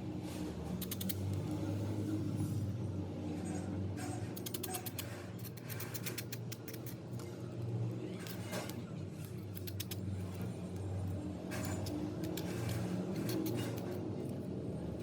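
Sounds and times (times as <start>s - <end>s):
small tool clicks and ticks: 0.8s - 1.5s, 4.3s - 7.3s, 8.3s - 10.4s.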